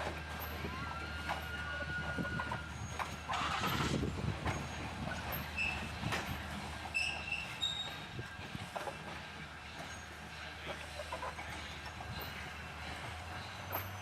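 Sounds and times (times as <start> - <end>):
train wheels knocking on rails: 1.2 - 14.0
thin steady squeal: 5.5 - 6.0, 6.9 - 8.2.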